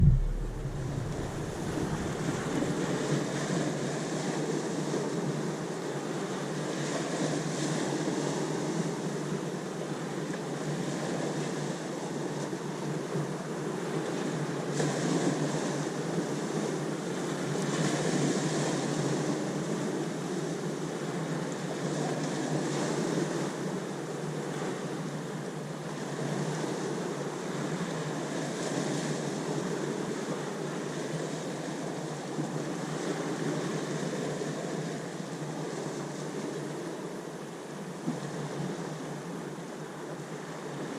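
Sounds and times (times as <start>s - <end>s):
ocean waves breaking: 0.0s - 3.2s.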